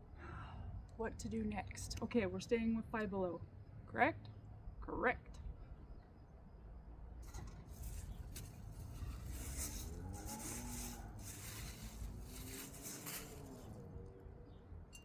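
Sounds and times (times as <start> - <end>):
packaging rustling: 7.3 - 13.8.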